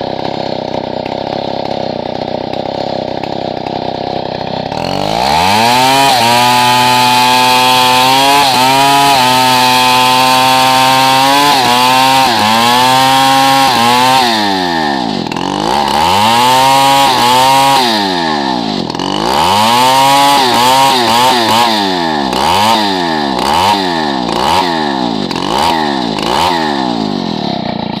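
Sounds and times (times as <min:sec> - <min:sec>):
chainsaw engine revving: 0:00.0 - 0:28.0.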